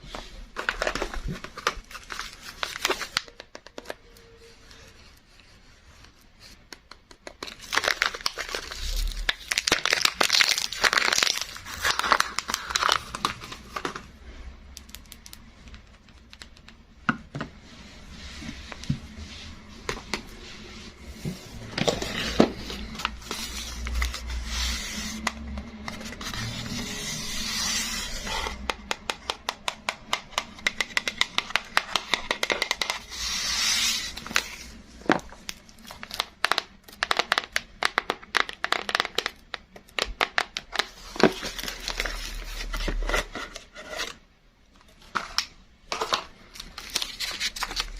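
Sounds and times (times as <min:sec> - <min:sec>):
wrapping crinkling and tearing: 0:00.2 - 0:04.4, 0:07.3 - 0:14.2, 0:21.6 - 0:28.6, 0:31.6 - 0:44.1, 0:45.1 - 0:47.9.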